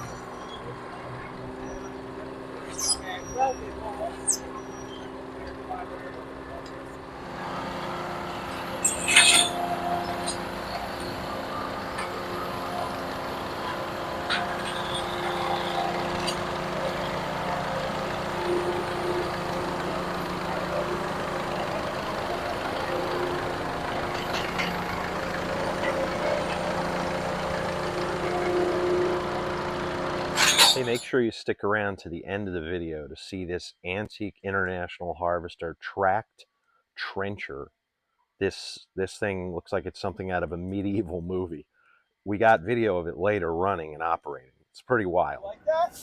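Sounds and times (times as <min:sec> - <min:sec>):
engine running: 0:00.0 - 0:31.2
sharp metallic clink: 0:08.8 - 0:10.4, 0:30.4 - 0:31.2.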